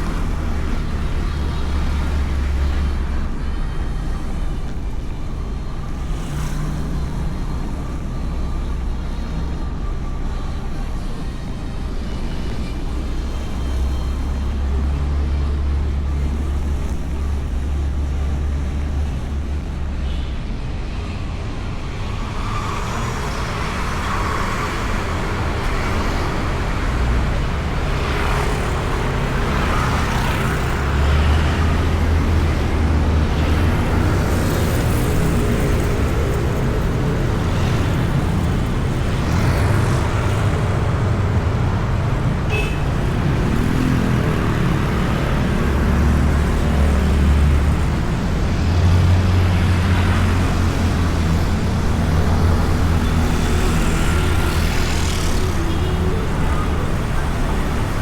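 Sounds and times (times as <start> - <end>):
road and traffic noise: 0.0 - 58.0.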